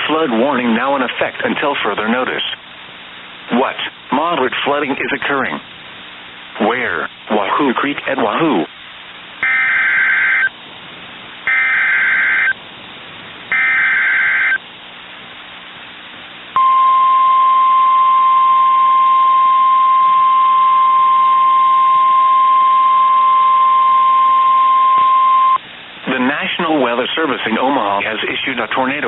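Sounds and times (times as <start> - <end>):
buzzy digital data bursts: 9.4 - 10.5, 11.5 - 12.6, 13.5 - 14.6
steady warning alarm tone: 9.4 - 10.5, 11.5 - 12.6, 13.5 - 14.6.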